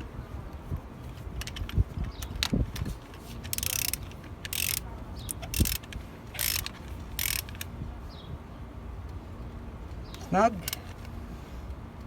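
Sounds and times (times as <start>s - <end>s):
hand ratchet clicking: 1.4s - 7.7s.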